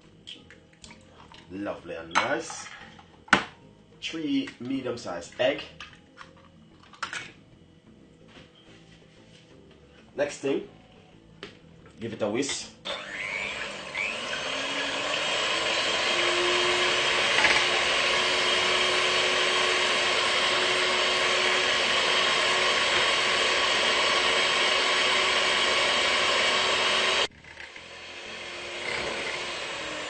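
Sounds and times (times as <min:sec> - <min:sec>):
electric hand mixer whisking: 0:12.8 - 0:30.0.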